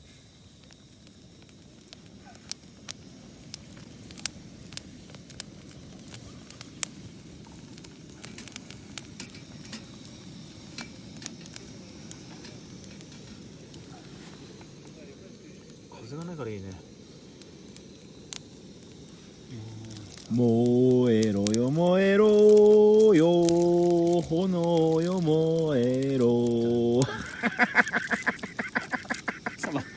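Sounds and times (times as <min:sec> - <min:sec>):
campfire crackling: 0:00.0 - 0:29.9
fire popping: 0:00.0 - 0:29.9
flames rushing: 0:00.0 - 0:29.9.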